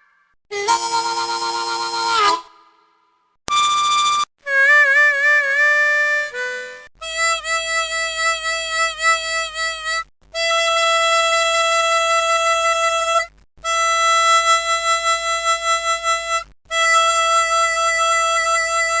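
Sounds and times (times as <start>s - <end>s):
harmonica long notes: 0.0s - 2.7s, 3.5s - 19.0s.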